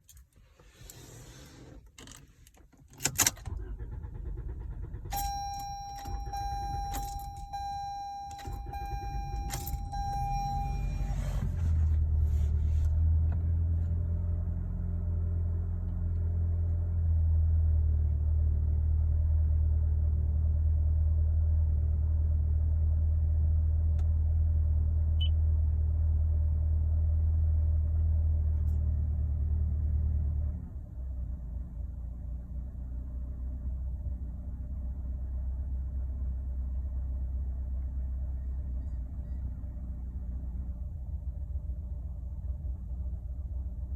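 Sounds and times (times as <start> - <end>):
car engine low drone: 0.0 - 43.9
car keys jangling: 1.9 - 3.6, 5.1 - 11.4
steady high tone: 5.2 - 11.4.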